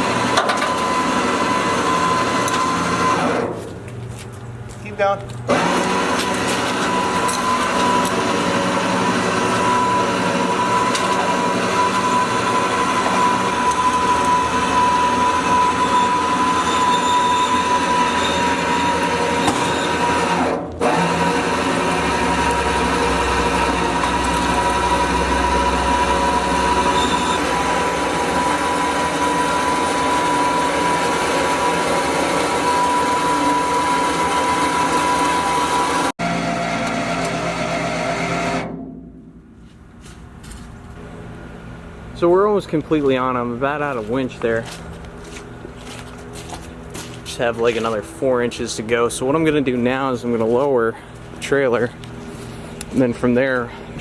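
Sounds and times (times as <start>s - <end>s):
electric winch motor whining: 0.0s - 3.6s, 5.5s - 38.9s.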